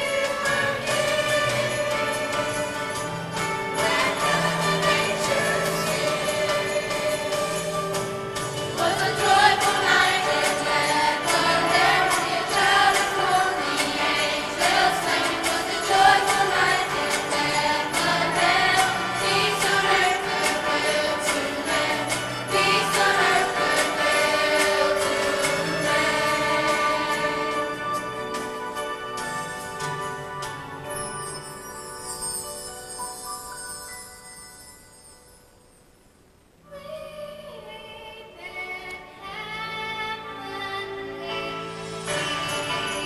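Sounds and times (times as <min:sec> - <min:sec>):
choir singing: 0:00.0 - 0:28.5
jingle bells shaken: 0:00.0 - 0:36.0, 0:41.7 - 0:43.0.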